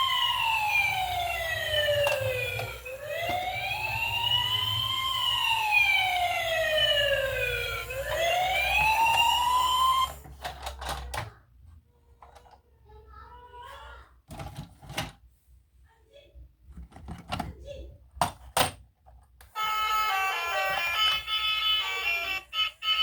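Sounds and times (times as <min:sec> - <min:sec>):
toy electronic siren wailing: 0:00.0 - 0:10.2, 0:19.6 - 0:23.0.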